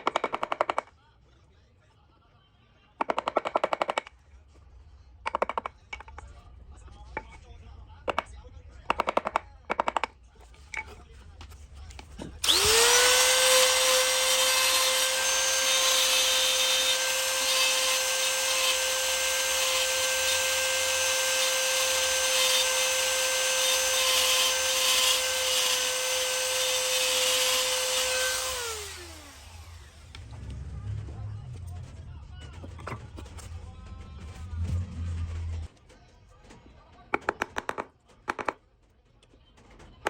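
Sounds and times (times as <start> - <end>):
electric power tool whining on wood: 12.4 - 30.3.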